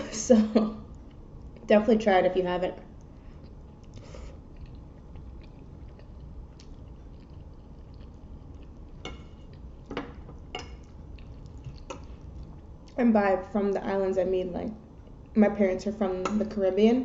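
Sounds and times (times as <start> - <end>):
person chewing: 3.0 - 13.0.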